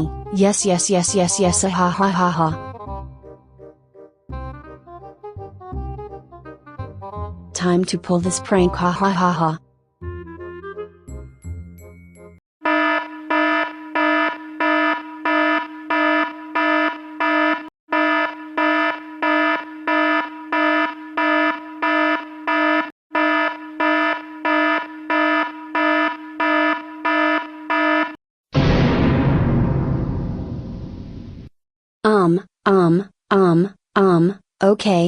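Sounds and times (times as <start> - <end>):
pulsing electronic fire alarm horn: 12.6 - 28.2.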